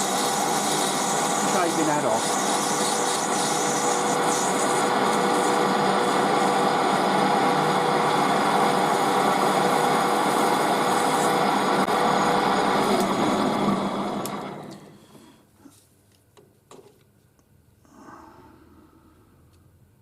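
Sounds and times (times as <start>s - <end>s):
blade shaving brass: 0.0s - 7.2s
metal lathe motor hum: 0.0s - 15.0s.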